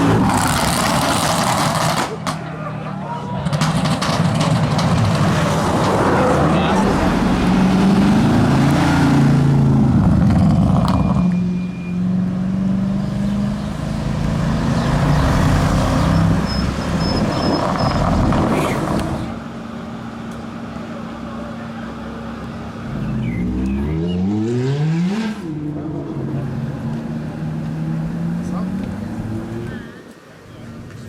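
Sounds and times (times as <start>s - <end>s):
exhaust cracks: 3.4s - 7.7s
car engine revving loudly: 3.6s - 11.0s, 22.9s - 29.7s.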